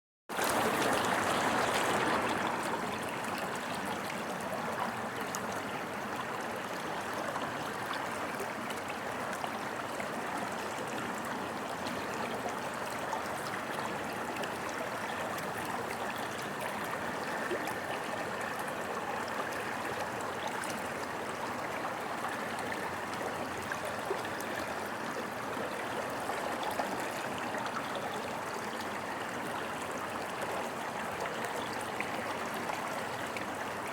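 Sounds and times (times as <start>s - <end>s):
river water rushing: 0.4s - 5.5s.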